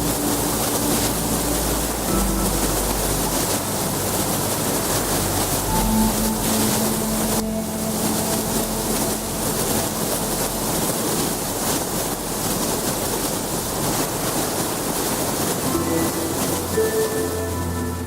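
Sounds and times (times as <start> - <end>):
rush of falling water: 0.0 - 18.0
soft music: 0.0 - 18.0.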